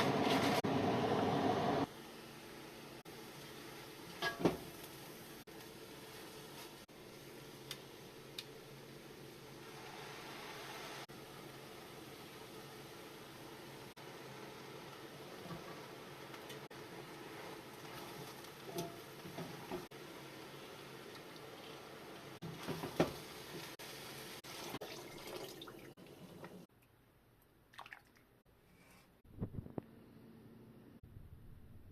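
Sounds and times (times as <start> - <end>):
liquid splashing and trickling: 24.4 - 26.7, 27.7 - 28.3.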